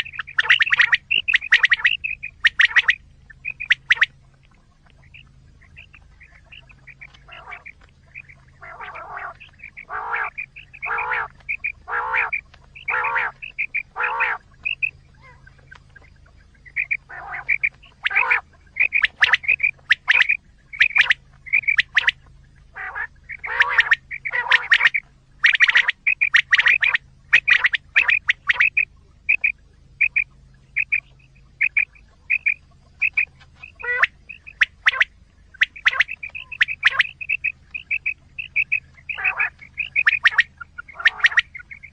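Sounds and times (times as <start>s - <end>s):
quail calls: 0.0s - 41.9s.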